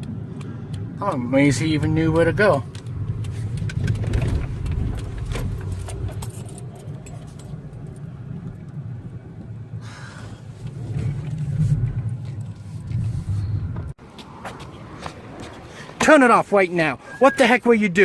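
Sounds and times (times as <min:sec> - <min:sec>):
light rattling and clicks: 0:00.0 - 0:08.8
car engine and road rumble: 0:00.0 - 0:18.0.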